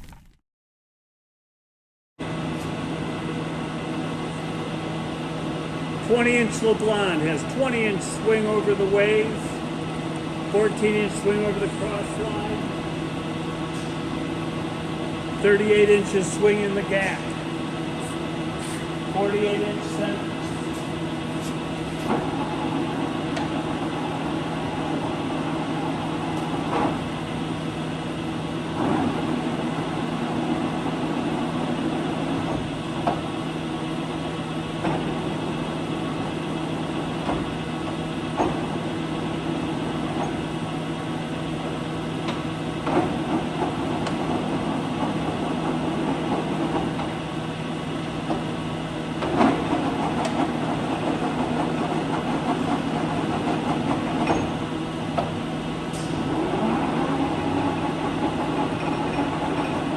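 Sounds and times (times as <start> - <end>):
short mechanical knocks: 0.0 - 0.4.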